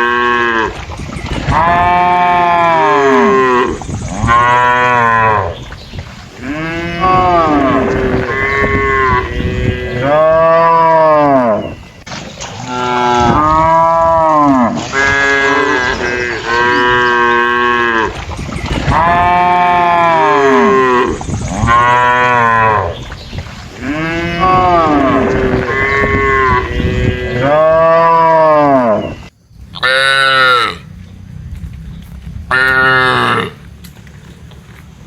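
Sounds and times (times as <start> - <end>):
cattle mooing: 0.0 - 0.8, 1.4 - 5.7, 6.4 - 11.8, 12.6 - 18.2, 18.8 - 23.1, 23.8 - 29.2, 29.8 - 30.9, 32.5 - 33.6.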